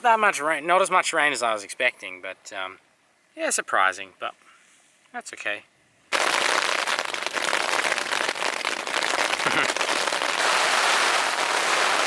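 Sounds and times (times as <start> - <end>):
heavy rain falling: 6.1 - 12.0.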